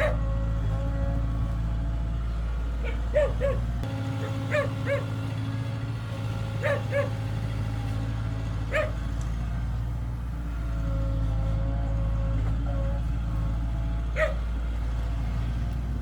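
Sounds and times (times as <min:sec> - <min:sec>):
dog barking: 0:00.0 - 0:00.2, 0:02.8 - 0:05.2, 0:06.6 - 0:07.2, 0:08.7 - 0:09.0, 0:14.1 - 0:14.5
heavy machine engine running: 0:00.0 - 0:16.0.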